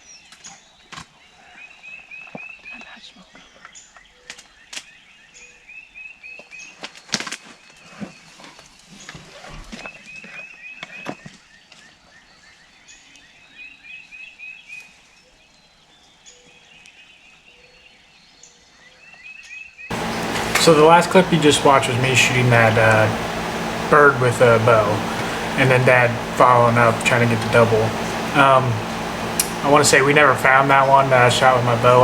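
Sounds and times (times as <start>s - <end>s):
songbirds chirping: 19.9s - 32.0s.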